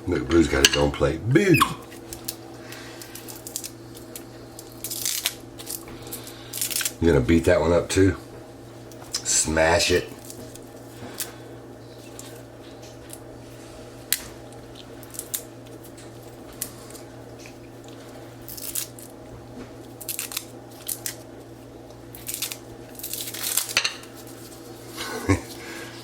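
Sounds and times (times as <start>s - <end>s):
steady low hum: 0.0s - 26.0s.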